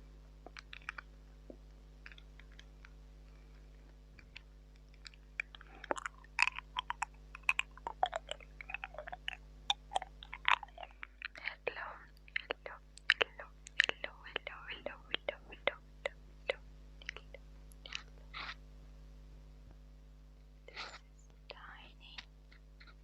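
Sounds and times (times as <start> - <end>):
lip smacks: 4.2 - 14.5, 17.0 - 18.6
tongue clicks: 4.2 - 18.6.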